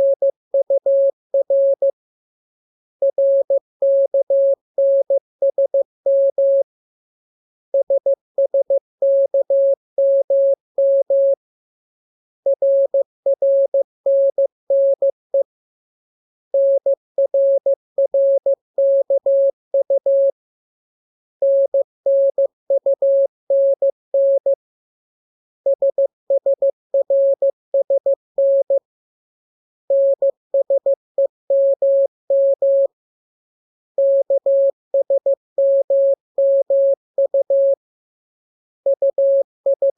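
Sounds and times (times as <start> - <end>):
morse code beeps: 25.8 - 28.8, 29.9 - 32.9, 34.0 - 37.8, 38.9 - 39.9.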